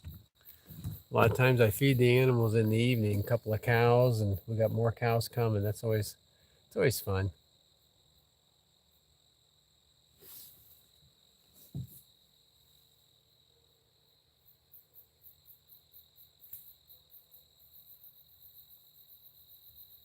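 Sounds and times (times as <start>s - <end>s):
short thump: 0.0s - 1.6s, 11.7s - 12.0s
high pulsing insect chirps: 0.0s - 20.0s
insect trill: 0.0s - 20.0s
soft rustle: 10.2s - 12.1s.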